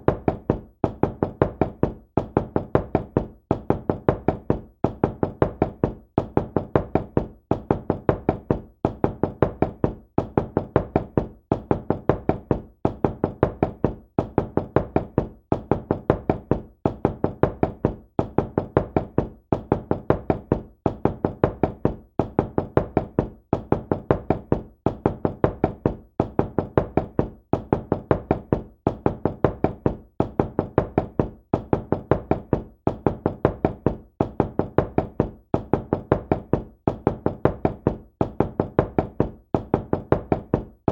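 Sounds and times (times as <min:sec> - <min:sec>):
knocking on a door: 0:00.0 - 0:40.9.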